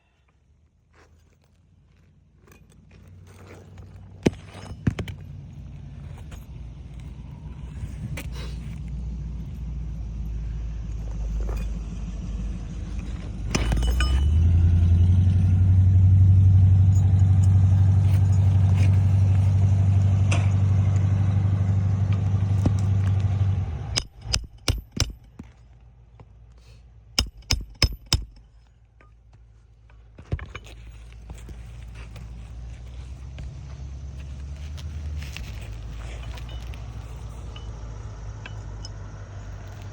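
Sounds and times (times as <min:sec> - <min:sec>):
loud steady low rumble: 0:04.2 - 0:25.5
hammer nailing shingles: 0:24.0 - 0:25.5, 0:27.2 - 0:28.6.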